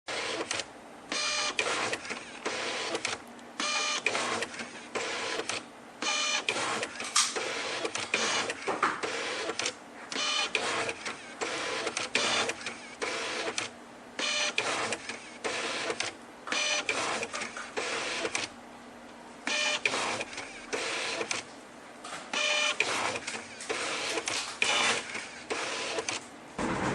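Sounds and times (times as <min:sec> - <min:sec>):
printer head printing: 0:00.1 - 0:18.5, 0:19.4 - 0:21.5, 0:22.3 - 0:26.2.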